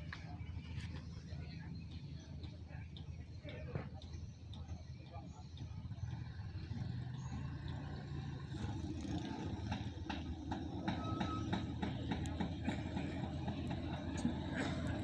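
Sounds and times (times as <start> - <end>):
sharp clicking knocks: 9.4 - 15.0.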